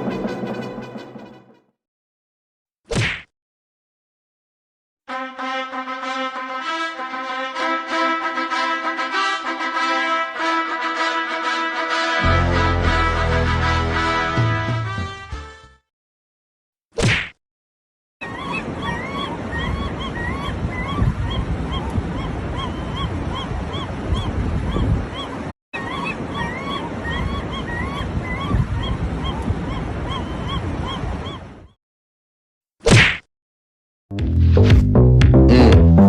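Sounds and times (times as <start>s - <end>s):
music: 0.0s - 1.7s, 5.1s - 15.9s, 34.1s - 36.0s
bird honking calls: 18.4s - 31.4s.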